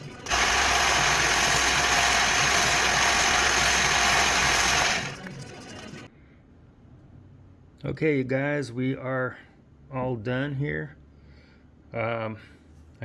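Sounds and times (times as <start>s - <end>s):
power tool grinding metal: 0.0s - 5.3s.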